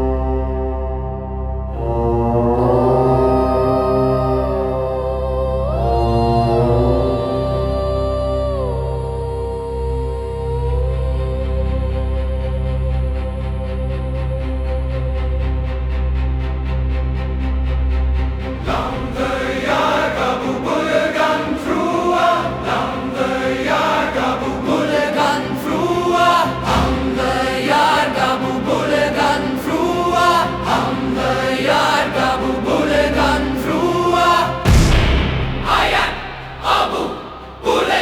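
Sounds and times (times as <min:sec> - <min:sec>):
choir chanting: 0:00.0 - 0:17.0, 0:18.3 - 0:38.0
dark orchestral music: 0:11.1 - 0:38.0
deep orchestral hit: 0:34.6 - 0:38.0.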